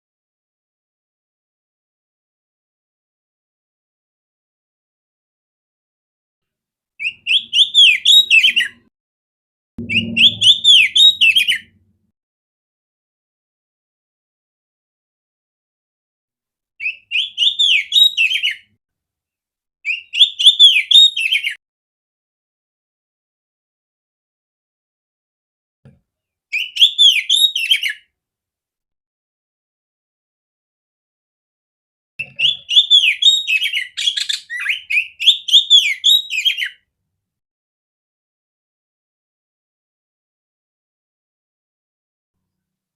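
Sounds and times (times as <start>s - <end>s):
bird singing whistled phrases: 7.0s - 8.8s, 9.8s - 11.7s, 16.8s - 18.6s, 19.9s - 21.6s, 26.5s - 28.0s, 32.2s - 36.8s.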